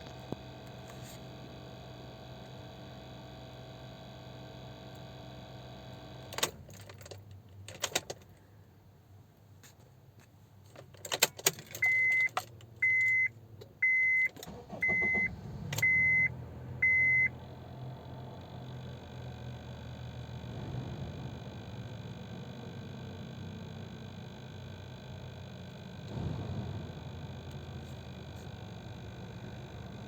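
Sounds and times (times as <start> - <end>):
car warning chime beeping: 11.8 - 17.4
whirring hum: 14.3 - 30.0.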